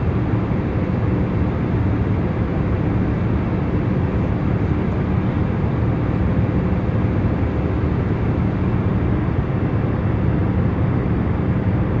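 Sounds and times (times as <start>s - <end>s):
airliner cabin rumble: 0.0s - 12.0s.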